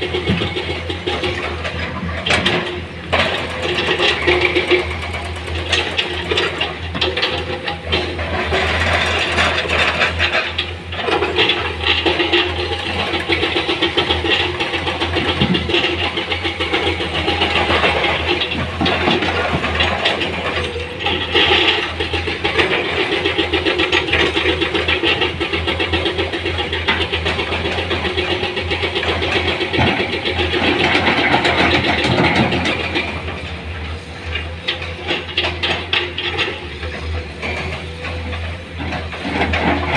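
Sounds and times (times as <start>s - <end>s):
heavy diesel engine running: 0.0s - 39.9s.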